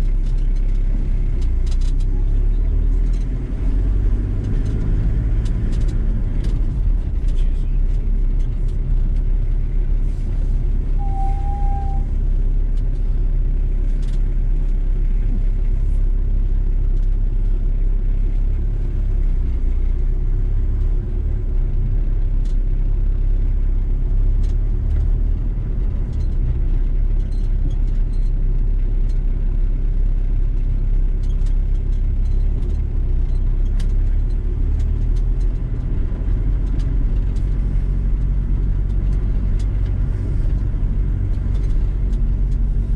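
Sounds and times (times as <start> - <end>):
van engine and road rumble: 0.0 - 42.9
brief thin tone: 11.0 - 12.2.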